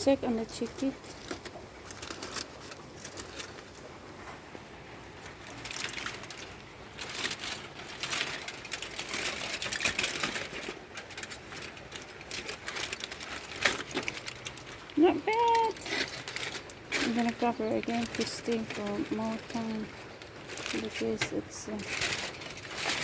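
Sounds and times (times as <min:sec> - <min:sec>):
aluminum foil crinkling: 0:00.0 - 0:23.0.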